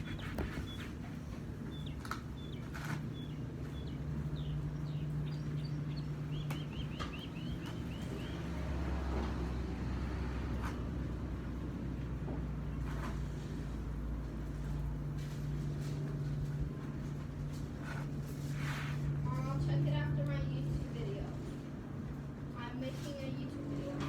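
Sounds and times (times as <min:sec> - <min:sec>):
bird chirping: 0:00.0 - 0:08.7.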